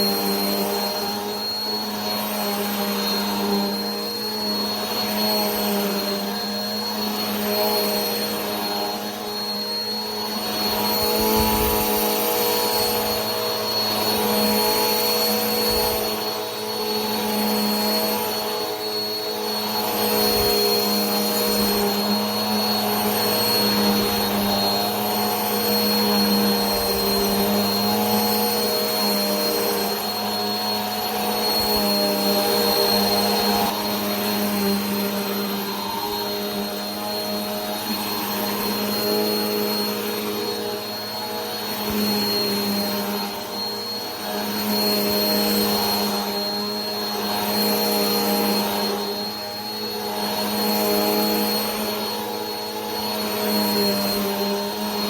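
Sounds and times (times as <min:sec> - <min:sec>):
vacuum cleaner running: 0:00.0 - 0:55.0.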